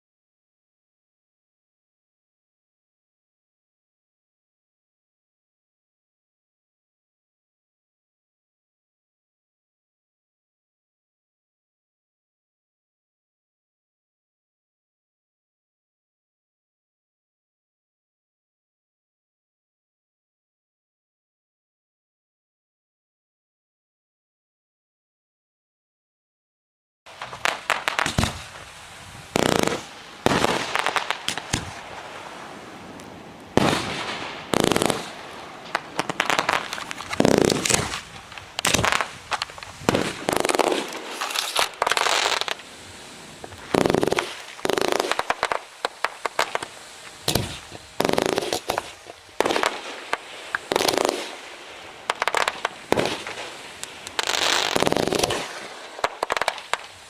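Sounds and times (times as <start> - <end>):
fireworks bangs: 27.1 - 57.0.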